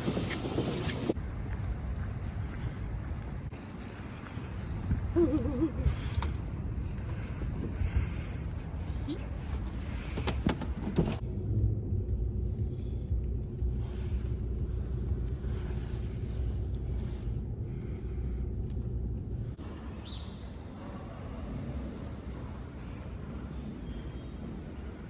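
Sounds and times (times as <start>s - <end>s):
vehicle rumbling in motion: 0.0s - 20.0s.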